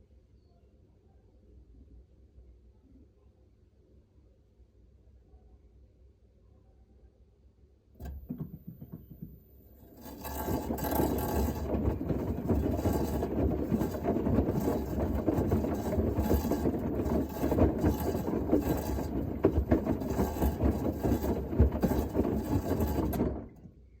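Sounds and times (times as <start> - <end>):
washing machine scraping and rattling: 8.0 - 23.7.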